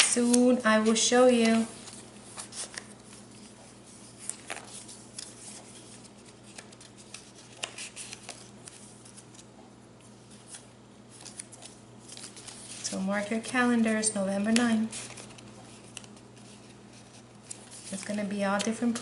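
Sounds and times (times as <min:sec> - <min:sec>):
faint steady hum: 0:00.0 - 0:19.0
paper rustling and clicks: 0:04.2 - 0:09.5, 0:14.5 - 0:16.7, 0:17.4 - 0:19.0.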